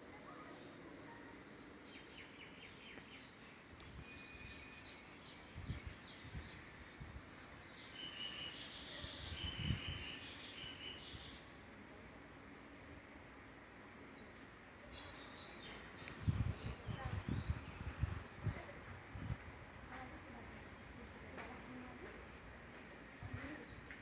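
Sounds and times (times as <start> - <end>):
birds chirping and trilling: 1.8 - 11.4.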